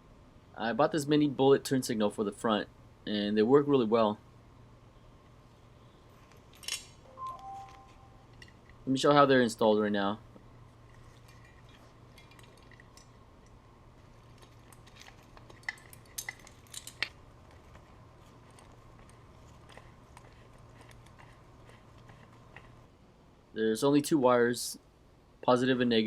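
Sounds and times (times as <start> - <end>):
faint low hum: 0.0 - 26.0
small parts clicking: 6.3 - 7.1, 10.9 - 21.0.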